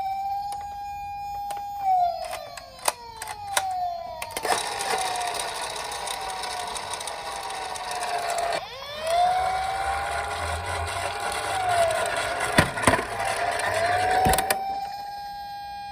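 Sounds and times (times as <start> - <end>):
toy electronic siren wailing: 0.0 - 15.9
toy rolling rattle: 4.4 - 14.5.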